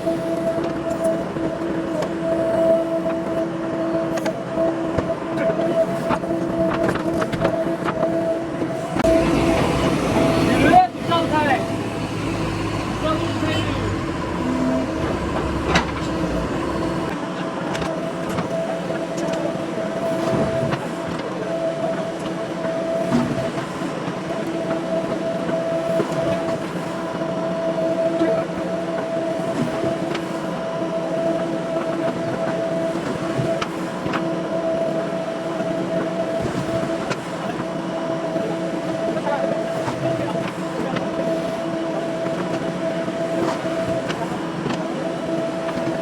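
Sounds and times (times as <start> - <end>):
steady whine: 0.0 - 22.6
diesel engine running under load: 8.7 - 17.2.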